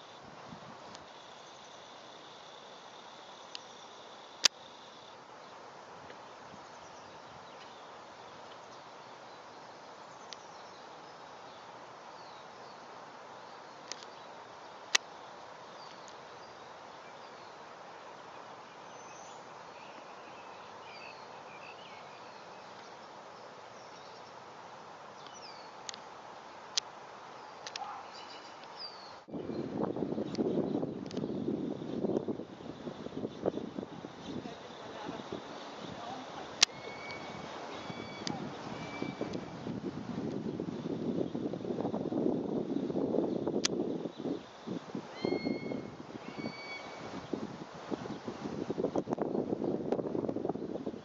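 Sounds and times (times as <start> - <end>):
outdoor background noise: 0.0 - 51.0
faint high bird chirps: 27.4 - 39.6, 44.1 - 47.1.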